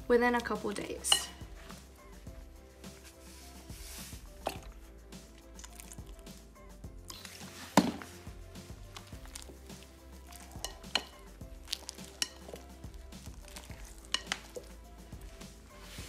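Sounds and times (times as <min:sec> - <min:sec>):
quiet background music: 0:00.0 - 0:16.0
slime being stirred: 0:02.9 - 0:06.4, 0:07.0 - 0:16.0.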